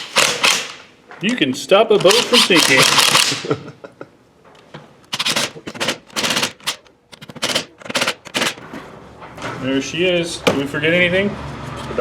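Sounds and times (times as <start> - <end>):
power tool rattling bursts: 0.0 - 0.8, 2.0 - 3.4, 5.1 - 8.7.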